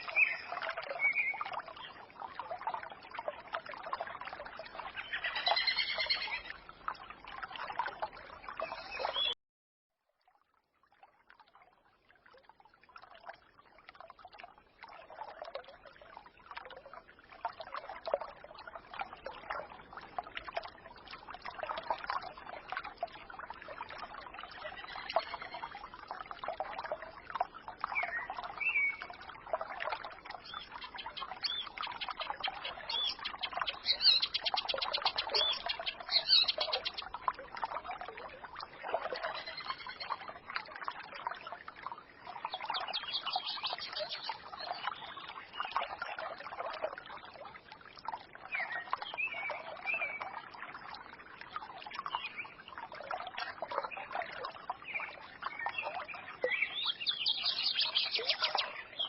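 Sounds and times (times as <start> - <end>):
stream babbling: 0.0 - 9.4, 11.2 - 59.0
small birds chirping: 5.0 - 6.6, 30.4 - 37.1, 39.2 - 40.1, 42.5 - 45.7, 55.0 - 59.0.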